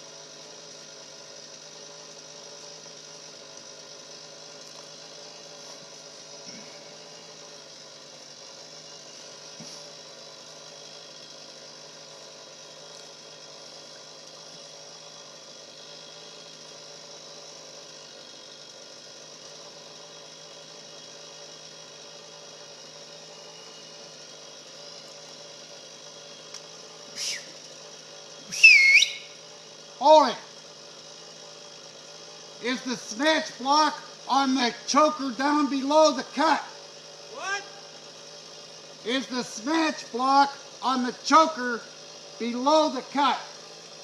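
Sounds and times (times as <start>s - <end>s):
engine idling: 0.0s - 44.0s
whistle sweeping in pitch: 27.2s - 27.5s, 28.5s - 29.3s.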